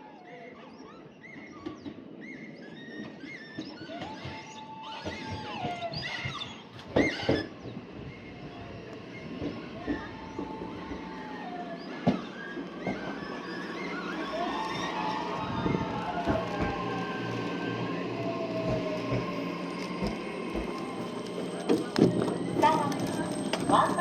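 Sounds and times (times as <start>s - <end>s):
electric train arriving: 0.8s - 24.0s
wailing cries sliding down: 2.6s - 7.6s, 8.3s - 24.0s.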